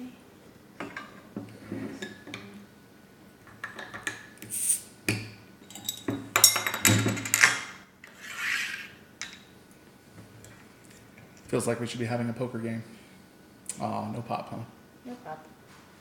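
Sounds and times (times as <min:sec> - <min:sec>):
glass and caps clattering: 0:05.7 - 0:07.7.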